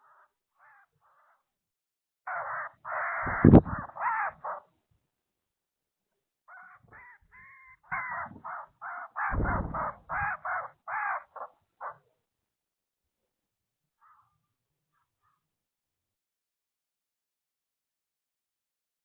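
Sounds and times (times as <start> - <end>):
bird harsh calls: 0.0 - 1.4, 2.3 - 4.7, 6.5 - 12.0, 14.0 - 14.4
sharp knock: 9.4 - 10.1
low rumble: 9.4 - 10.2.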